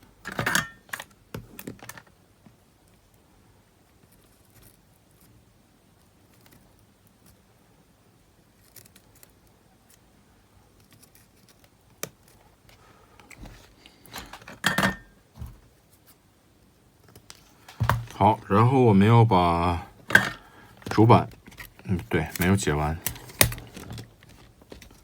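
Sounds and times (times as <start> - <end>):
metal parts clattering and tapping: 0.2 - 1.1, 14.1 - 15.6, 20.1 - 25.0.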